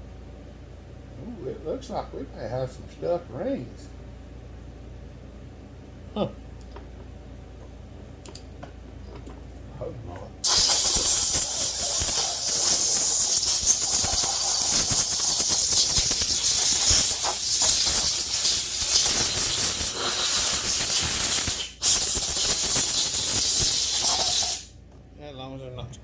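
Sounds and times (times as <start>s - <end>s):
pressurised spray hissing: 10.4s - 24.7s.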